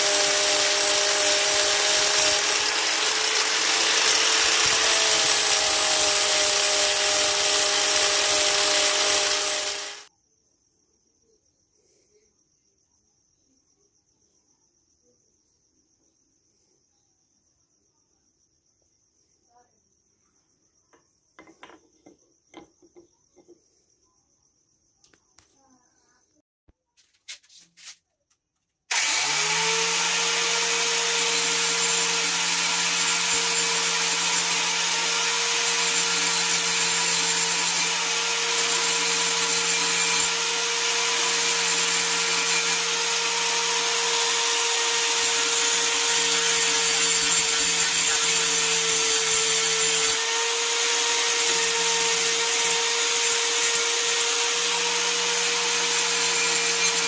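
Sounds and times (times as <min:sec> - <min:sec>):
electric motor humming: 0:00.0 - 0:10.1, 0:28.9 - 0:57.0.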